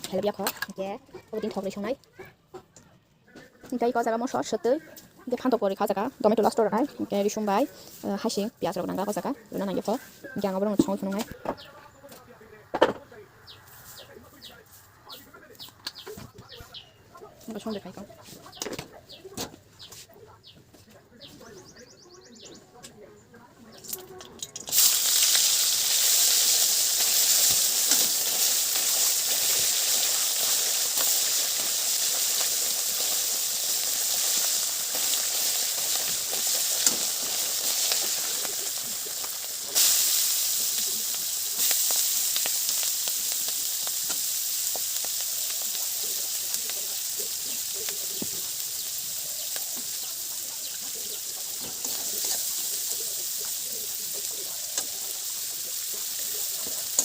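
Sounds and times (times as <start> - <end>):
food sizzling in hot oil: 23.9 - 57.0.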